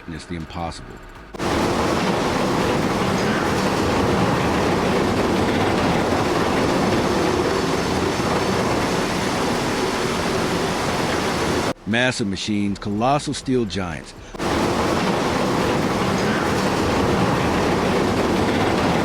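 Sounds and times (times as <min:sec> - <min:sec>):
loud mechanical rumble: 0:00.0 - 0:11.8, 0:14.3 - 0:19.0.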